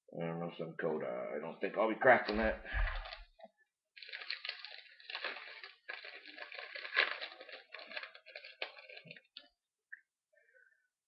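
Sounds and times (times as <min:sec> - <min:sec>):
foil wrapper crinkling: 0:02.2 - 0:03.4, 0:04.0 - 0:09.6.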